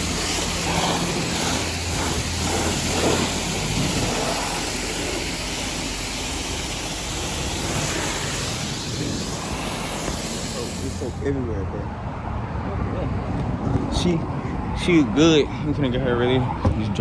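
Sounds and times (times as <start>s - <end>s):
spray wand hissing: 0.0s - 11.1s.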